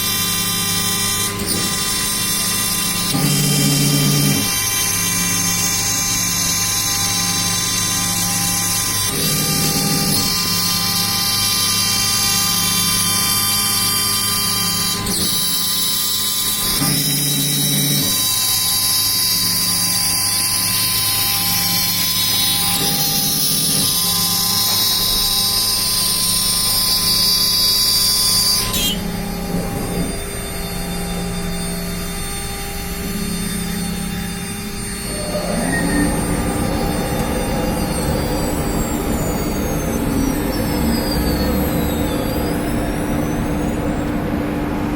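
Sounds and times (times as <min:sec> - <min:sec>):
router cutting noise: 0:00.0 - 0:44.8
router spindle whine: 0:00.0 - 0:44.9
low motor tones shifting pitch: 0:28.9 - 0:44.9
tone sliding down in pitch: 0:32.8 - 0:44.6.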